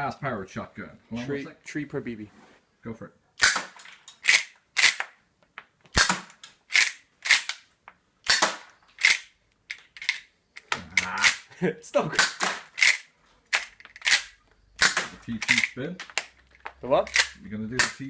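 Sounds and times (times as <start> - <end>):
airsoft shotgun shots: 3.4 - 3.8, 6.0 - 6.4, 8.3 - 8.7.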